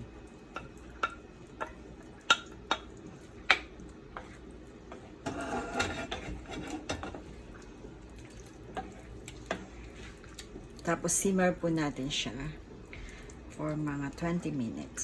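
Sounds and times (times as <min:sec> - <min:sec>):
spoon scraping cooking pot: 0:04.1 - 0:07.3.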